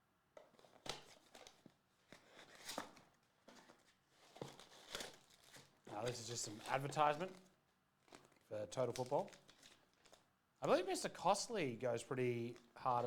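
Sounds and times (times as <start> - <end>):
card pack rustling and clicking: 0.5 - 10.8.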